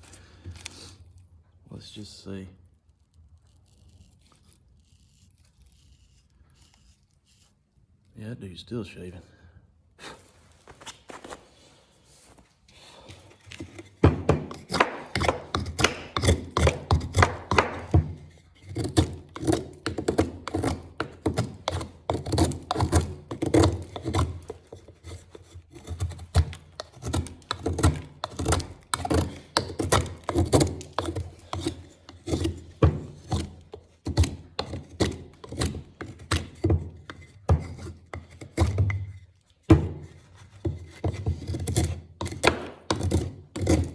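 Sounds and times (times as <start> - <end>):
knife whittling wood: 3.1 - 7.9, 13.4 - 43.9.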